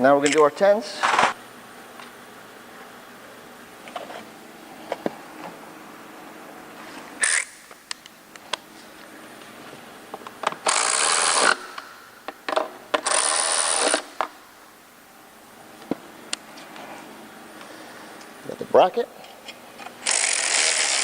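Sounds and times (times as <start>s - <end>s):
cordless power driver running: 7.2s - 7.8s, 10.6s - 12.3s, 12.9s - 14.3s, 20.0s - 21.0s
tools clicking: 7.2s - 8.1s, 20.0s - 21.0s.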